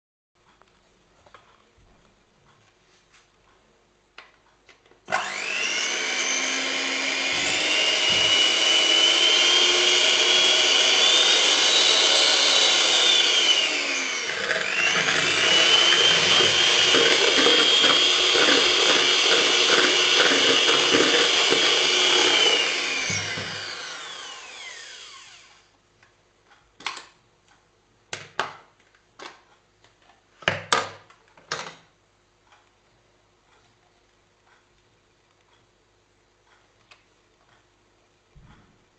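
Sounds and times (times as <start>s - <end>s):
hand mixer motor whining: 5.1s - 25.6s.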